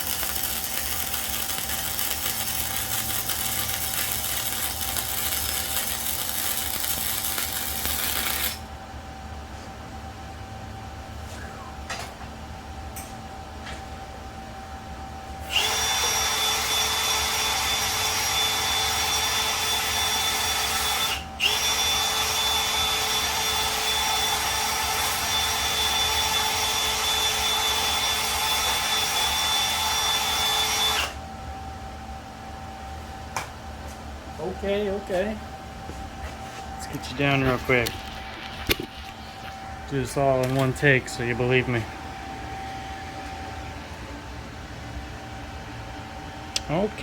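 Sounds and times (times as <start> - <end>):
welding arc hissing with high whine: 0.0 - 8.7, 15.4 - 31.2, 36.8 - 41.8.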